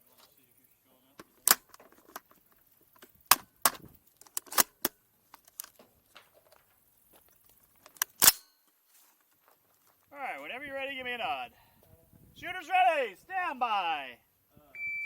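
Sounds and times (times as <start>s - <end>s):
guns being loaded metallic clacks: 1.2s - 5.9s, 7.4s - 8.8s.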